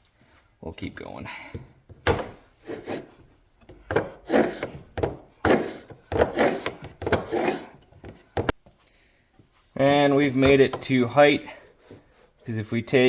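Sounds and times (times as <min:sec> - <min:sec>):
hand file rasping on steel: 0:02.6 - 0:08.2.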